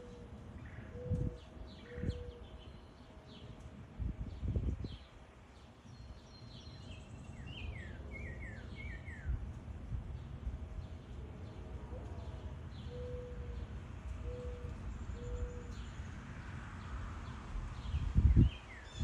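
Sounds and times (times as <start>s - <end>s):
background hum: 0.0s - 19.0s
songbirds chirping: 0.0s - 19.0s.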